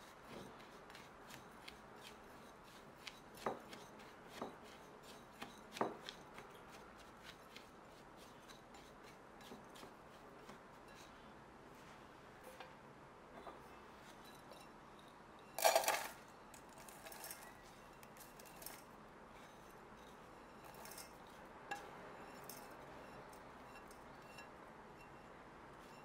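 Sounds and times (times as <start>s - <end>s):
kitchenware clinking: 15.4s - 16.2s.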